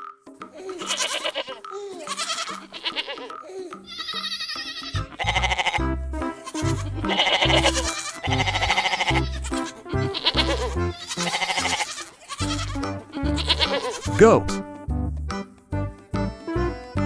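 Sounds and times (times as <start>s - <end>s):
goats bleating: 0.6s - 14.3s
music with repeating bass line: 5.0s - 11.0s.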